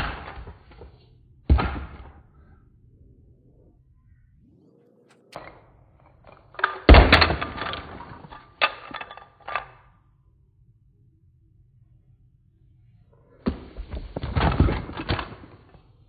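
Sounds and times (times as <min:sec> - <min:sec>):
clattering: 0:06.2 - 0:09.8.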